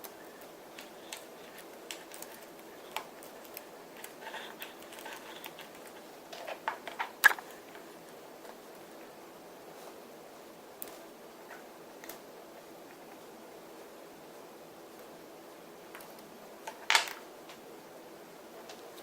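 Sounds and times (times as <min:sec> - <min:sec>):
small tools clicking and tapping: 0:00.8 - 0:07.8.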